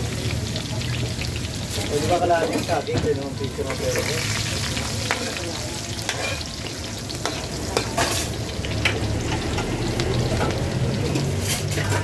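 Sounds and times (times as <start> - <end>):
rain falling: 7.5 - 11.4.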